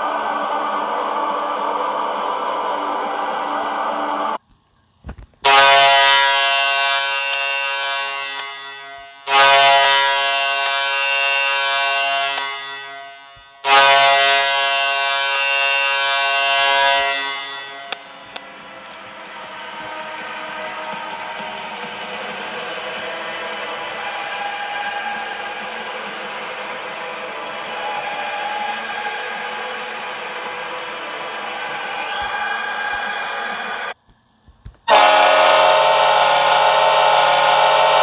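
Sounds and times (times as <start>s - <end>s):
arena goal horn blasts: 5.4s - 19.1s, 34.9s - 38.0s.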